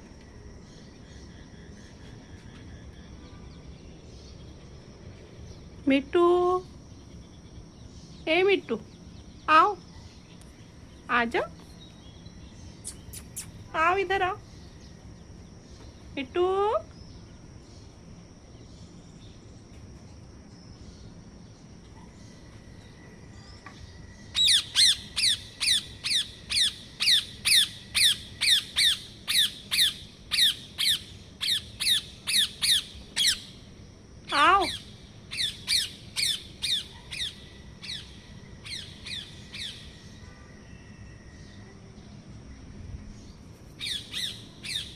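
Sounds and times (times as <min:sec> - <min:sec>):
parrot squawking: 0:24.4 - 0:33.4.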